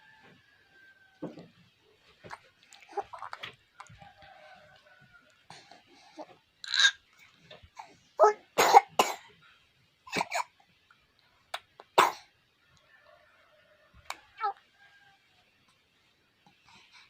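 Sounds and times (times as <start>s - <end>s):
baby coughing: 6.7s - 7.0s, 8.2s - 9.3s, 10.1s - 10.6s, 12.0s - 12.3s.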